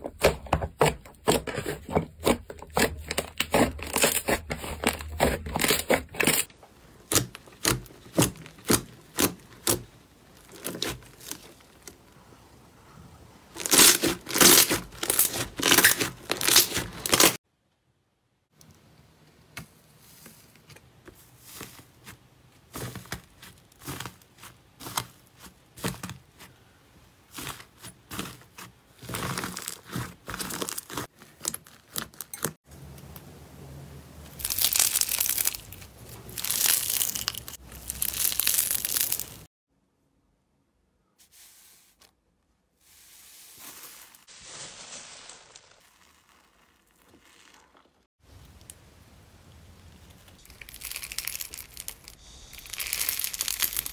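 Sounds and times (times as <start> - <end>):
slime crackling and popping: 7.1 - 11.9, 13.6 - 17.4, 34.4 - 39.5, 50.0 - 53.9.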